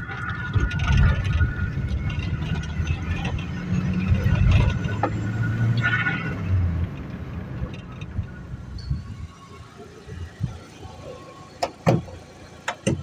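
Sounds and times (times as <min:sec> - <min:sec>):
car engine running: 0:00.0 - 0:09.2.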